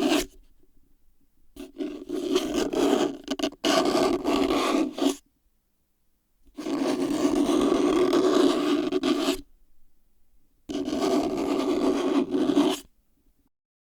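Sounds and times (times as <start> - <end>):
scraping on a plastic box: 10.7 - 12.9.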